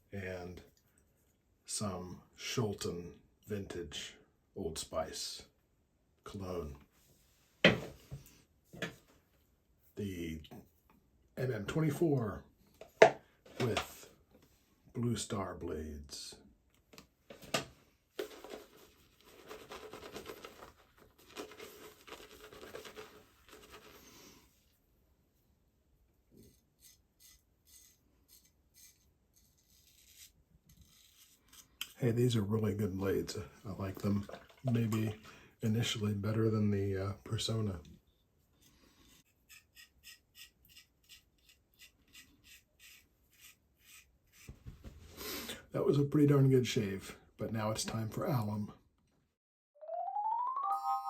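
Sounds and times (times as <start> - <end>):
razor scraping stubble: 26.4 - 32.0, 39.2 - 44.6.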